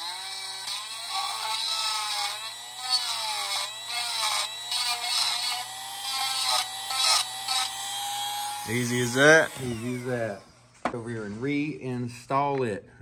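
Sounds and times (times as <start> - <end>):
rotary tool whining: 0.0 - 10.8
grinding hiss: 6.4 - 10.6.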